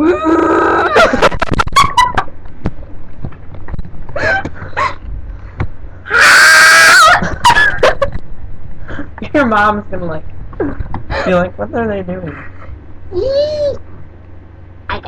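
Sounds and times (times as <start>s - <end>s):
girl screaming: 6.1s - 7.2s, 13.1s - 13.8s.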